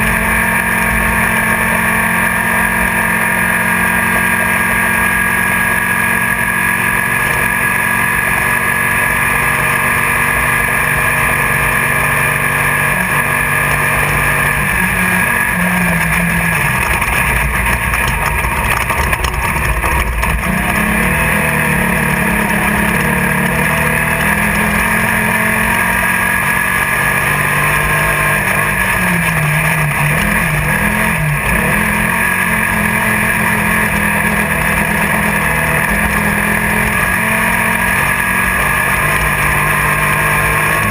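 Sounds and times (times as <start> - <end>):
race car engine revving: 0.0 - 40.9
loud rush of noise: 4.7 - 39.5.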